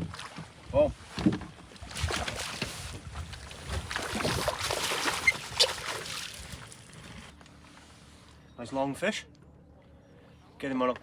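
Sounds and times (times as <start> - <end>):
knocks and clicks in boat: 0.0 - 7.5
water splashing: 1.8 - 7.2.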